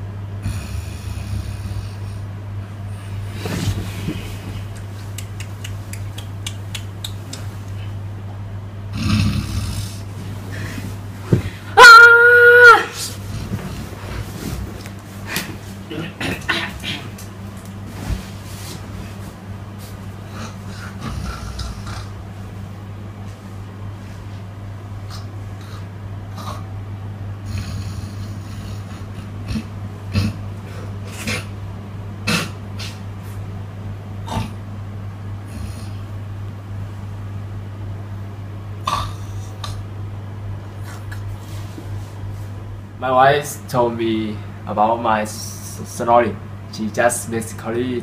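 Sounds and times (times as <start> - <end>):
steady low hum: 0.0 - 48.0
person snoring: 0.4 - 2.3, 8.9 - 10.1, 20.3 - 22.2, 27.4 - 30.4, 35.5 - 36.1.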